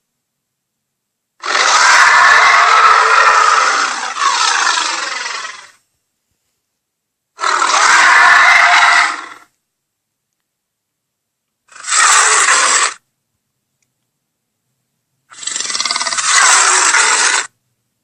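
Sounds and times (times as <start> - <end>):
harsh monster roar: 1.4 - 5.7, 7.4 - 9.4, 11.7 - 13.0, 15.3 - 17.5.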